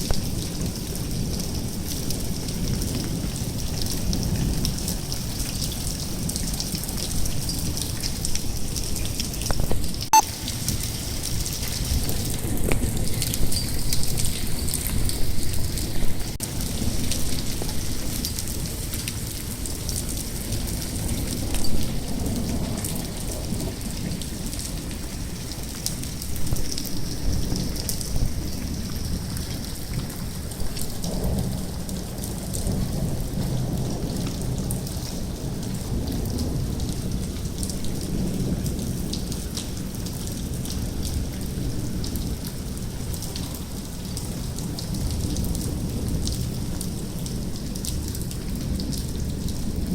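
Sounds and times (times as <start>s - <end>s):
hail and rain pattering: 0.0s - 49.9s.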